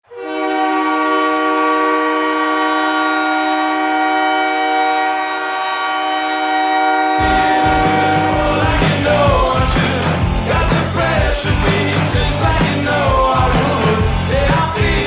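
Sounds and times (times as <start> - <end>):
hockey goal horn blast: 0.0 - 9.8.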